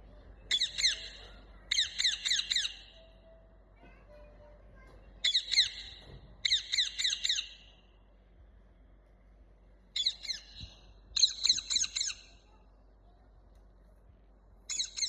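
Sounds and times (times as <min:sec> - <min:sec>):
parrot squawking: 0:00.5 - 0:02.9, 0:05.2 - 0:07.6.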